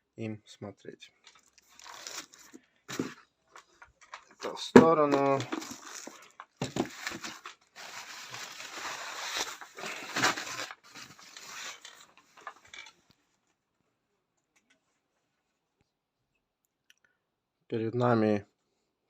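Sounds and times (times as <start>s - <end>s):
packaging rustling and crinkling: 1.3s - 12.8s.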